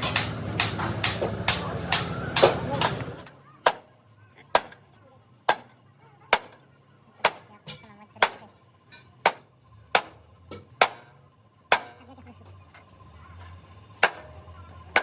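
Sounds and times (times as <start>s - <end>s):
hammer striking metal: 0.0s - 3.8s, 10.8s - 11.1s, 11.7s - 12.0s.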